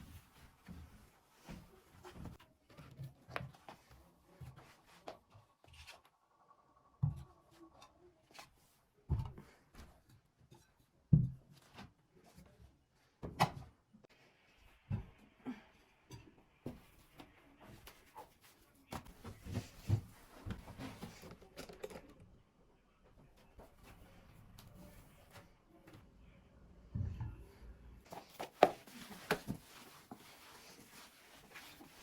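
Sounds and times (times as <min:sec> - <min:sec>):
objects knocking and thudding: 0:09.1 - 0:11.9
rustling and rubbing: 0:28.1 - 0:32.0.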